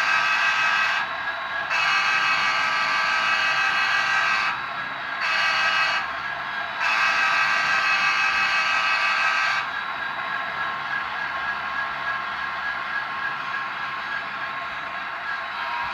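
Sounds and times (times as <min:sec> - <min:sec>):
model train horn blasts: 0:00.0 - 0:01.0, 0:01.7 - 0:04.6, 0:05.2 - 0:06.1, 0:06.8 - 0:09.5
model train running: 0:00.0 - 0:15.9.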